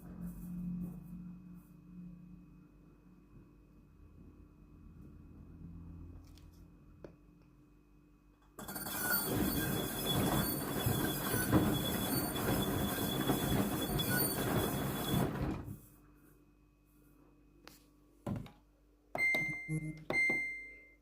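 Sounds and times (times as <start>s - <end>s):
drive belt squealing: 8.6s - 15.7s.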